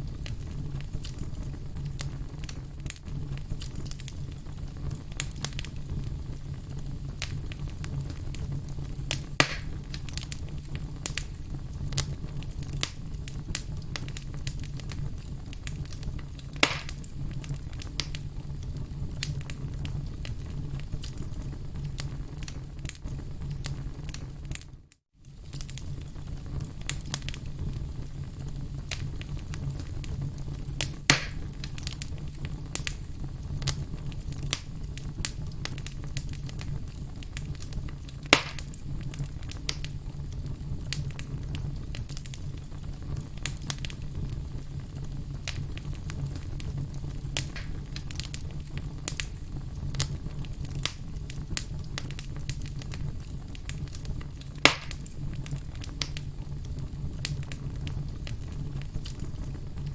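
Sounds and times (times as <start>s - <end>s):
firewood crackling: 0.0s - 59.9s
low rumble of flames: 0.0s - 59.9s
loud wood pops: 9.4s - 9.8s, 16.6s - 17.0s, 31.1s - 31.4s, 38.3s - 38.7s, 54.6s - 55.0s.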